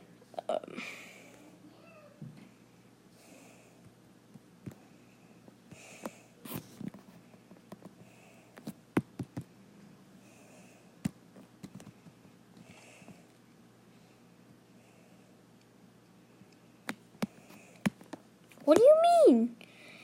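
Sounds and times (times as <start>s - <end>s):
soft breathing: 2.4s - 3.9s, 4.7s - 8.7s, 10.1s - 11.0s, 12.6s - 15.4s, 17.2s - 17.9s, 19.6s - 20.0s.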